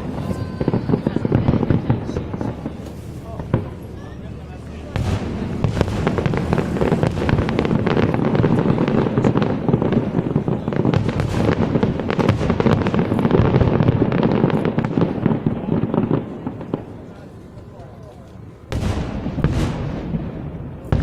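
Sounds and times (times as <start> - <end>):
fireworks bangs and crackles: 0.0 - 21.0
low rumble: 0.9 - 10.4.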